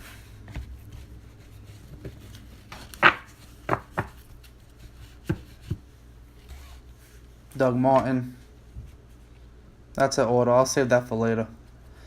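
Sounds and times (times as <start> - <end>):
cards tapping on a table: 3.0 - 4.2.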